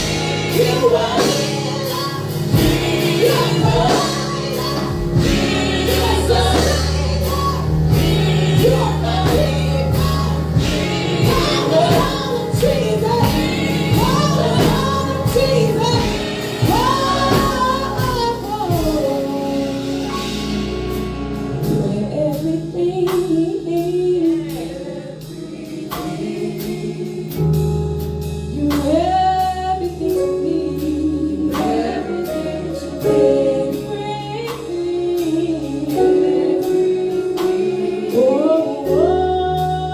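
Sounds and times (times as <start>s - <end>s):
gospel singers with band: 0.0s - 39.9s.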